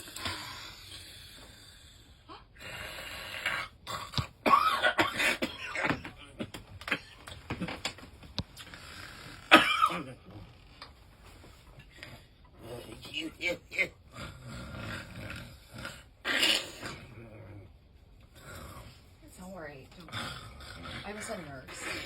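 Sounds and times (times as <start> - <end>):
person coughing and rasping: 3.6 - 8.0, 9.4 - 10.4.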